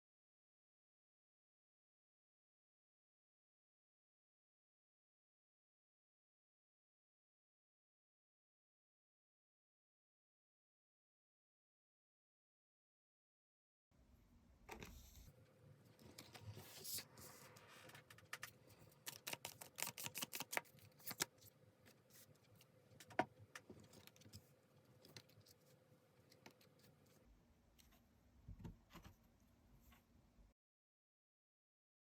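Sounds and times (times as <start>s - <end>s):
cards rustling: 16.0s - 23.0s.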